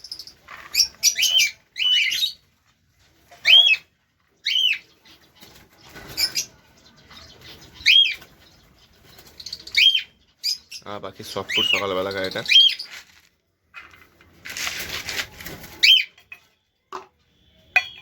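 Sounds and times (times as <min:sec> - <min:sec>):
birds chirping: 0:00.0 - 0:14.4, 0:15.3 - 0:18.0.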